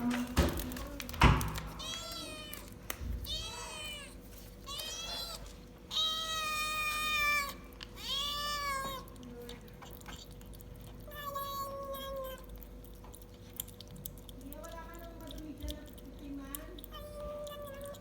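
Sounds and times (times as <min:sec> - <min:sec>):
cat meowing while eating: 0:01.4 - 0:10.4, 0:11.0 - 0:12.7, 0:16.8 - 0:18.0.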